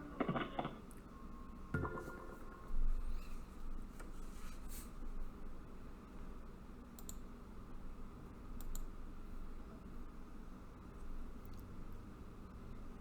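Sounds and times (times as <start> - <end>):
low steady background hum: 0.0 - 13.0
computer clicks: 7.0 - 7.2.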